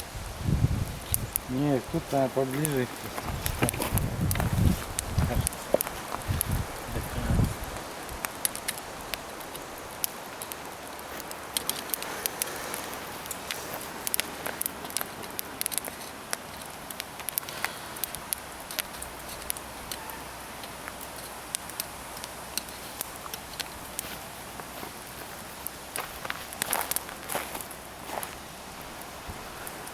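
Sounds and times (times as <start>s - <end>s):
charcoal fire crackling: 0.0s - 29.9s
steady hiss: 0.0s - 29.9s
sharp pops: 1.0s - 24.1s.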